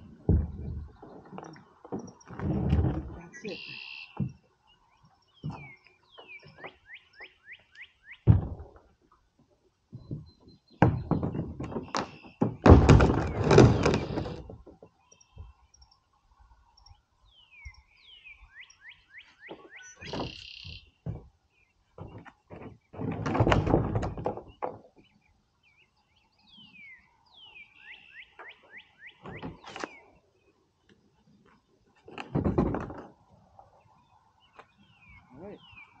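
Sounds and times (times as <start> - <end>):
kayak knocks and thuds: 0.1 - 3.2, 5.4 - 6.7, 8.2 - 8.9, 9.9 - 15.6, 19.5 - 21.3, 21.9 - 25.0, 32.2 - 33.1
kayak scraping: 11.6 - 14.9.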